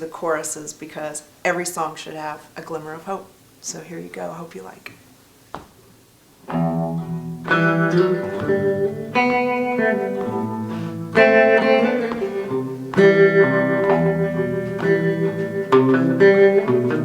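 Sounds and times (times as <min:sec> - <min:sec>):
guitar strumming ringing chords: 0:06.4 - 0:17.0.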